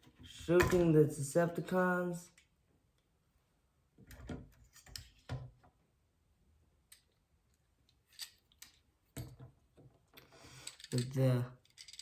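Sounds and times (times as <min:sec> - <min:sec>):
plastic parts clicking: 0:10.6 - 0:12.0.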